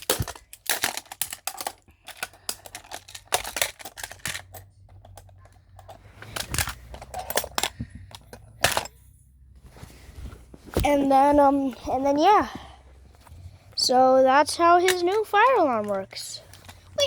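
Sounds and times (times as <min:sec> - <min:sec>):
clicks and clacks of handled device: 0:00.0 - 0:08.9.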